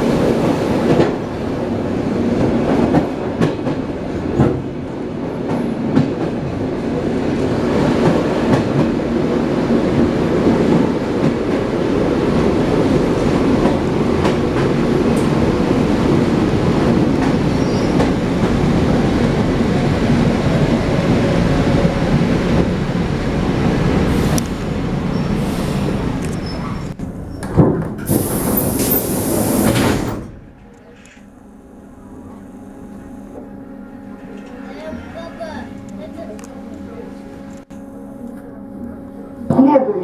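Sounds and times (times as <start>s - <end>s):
train wheels rumbling on rails: 0.0s - 31.2s.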